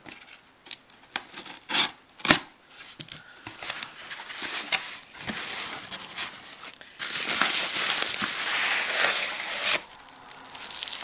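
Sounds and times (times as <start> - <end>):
packaging rustling and clicking: 3.0 - 11.0
wrapping crinkling: 3.6 - 11.0.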